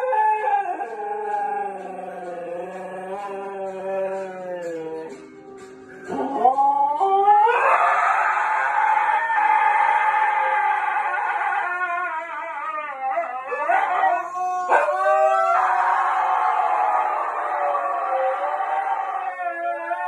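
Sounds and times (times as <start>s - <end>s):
dog howling: 0.0s - 5.2s, 6.1s - 20.0s
music: 0.0s - 20.0s.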